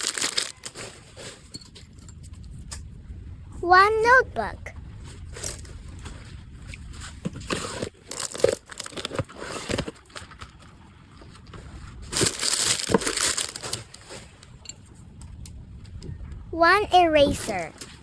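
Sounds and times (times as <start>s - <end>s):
plastic packaging crinkling: 0.0s - 1.3s, 7.4s - 10.6s, 12.1s - 14.1s.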